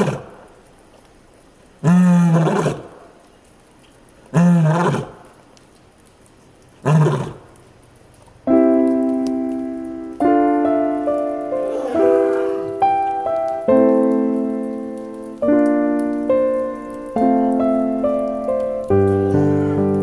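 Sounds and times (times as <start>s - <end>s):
lion roaring: 0.0s - 0.4s, 1.8s - 3.0s, 4.3s - 5.2s, 6.8s - 7.5s, 11.6s - 12.8s
piano music: 8.5s - 20.0s.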